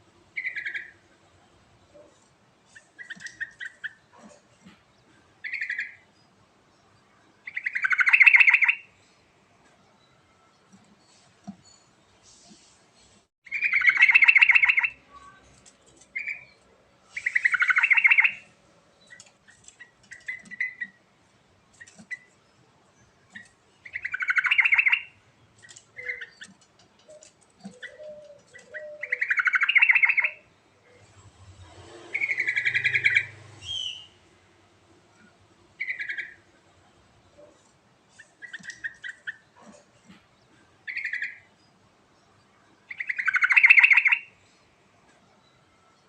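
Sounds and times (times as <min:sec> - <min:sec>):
bulbul singing: 0:32.1 - 0:34.3.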